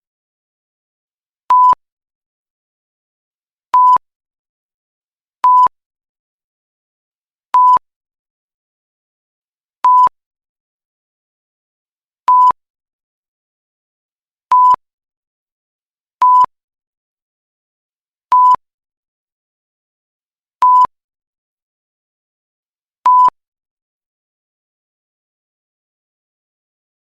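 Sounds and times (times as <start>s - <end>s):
censor bleep beeps: 1.5s - 1.8s, 3.8s - 4.0s, 5.4s - 5.7s, 7.6s - 7.8s, 9.8s - 10.2s, 12.3s - 12.6s, 14.5s - 14.8s, 16.2s - 16.5s, 18.3s - 18.6s, 20.6s - 20.9s, 23.1s - 23.4s.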